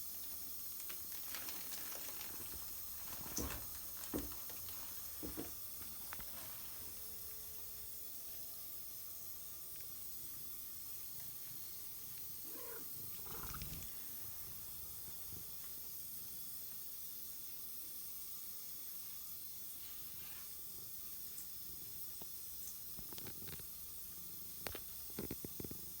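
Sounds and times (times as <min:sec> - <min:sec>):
cat call: 0:12.4 - 0:13.9
cat purring: 0:12.4 - 0:14.2.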